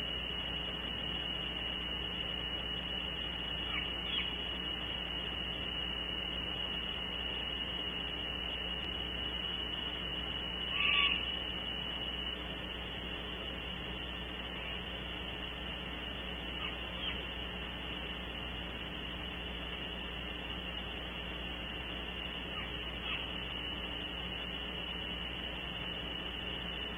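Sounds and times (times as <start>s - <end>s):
low hum: 0.0s - 26.9s
owlets chirping: 3.6s - 4.6s, 10.6s - 11.7s, 16.4s - 18.0s, 21.9s - 24.5s.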